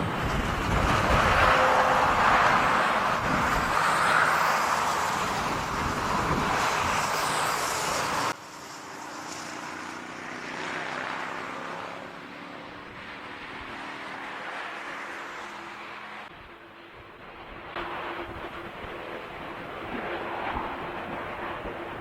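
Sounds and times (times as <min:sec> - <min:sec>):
jet engines roaring: 0:00.0 - 0:22.0.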